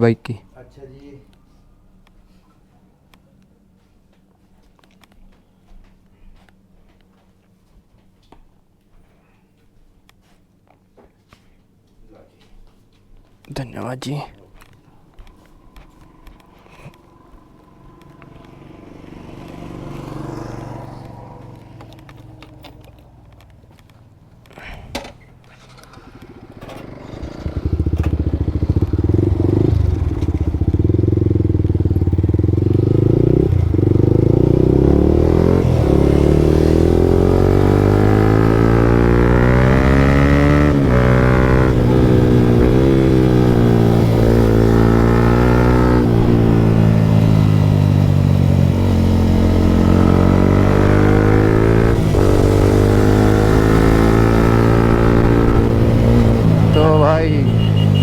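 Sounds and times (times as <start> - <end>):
motorcycle engine accelerating: 15.1 - 24.7, 25.3 - 58.0.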